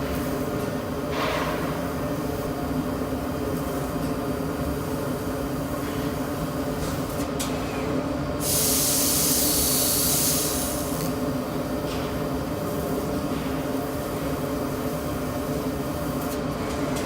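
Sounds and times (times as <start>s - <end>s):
loud hiss: 8.4s - 11.0s.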